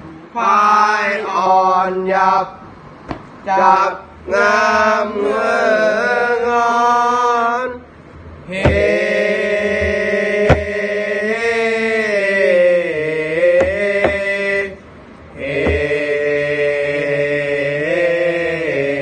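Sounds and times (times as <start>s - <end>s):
sharp knocks: 3.1s - 3.3s, 8.6s - 9.0s, 9.8s - 10.8s, 13.6s - 14.4s, 15.6s - 16.1s
person chanting long vowel: 8.5s - 14.8s, 15.4s - 19.0s.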